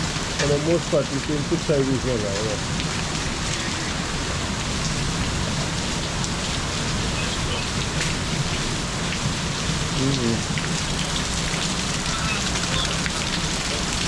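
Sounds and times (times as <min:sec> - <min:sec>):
heavy rain hiss: 0:00.0 - 0:14.0.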